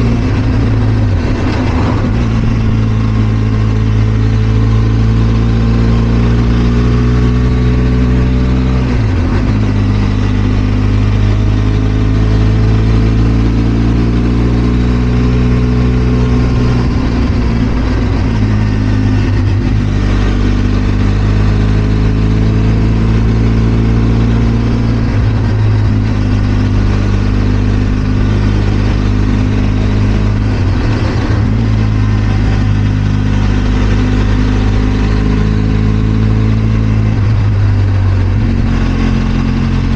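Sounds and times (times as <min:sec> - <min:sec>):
wind rush: 0:00.0 - 0:04.7, 0:16.2 - 0:21.4, 0:24.2 - 0:39.9
motorcycle engine running: 0:00.0 - 0:39.9.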